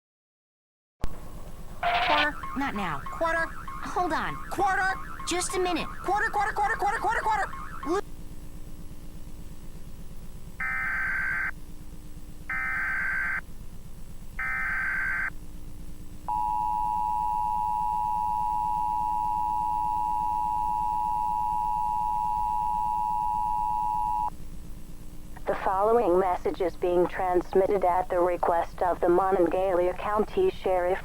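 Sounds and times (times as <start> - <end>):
rasping data bursts: 1.2 - 8.0
steady two-tone attention signal: 1.8 - 8.0, 16.3 - 24.3.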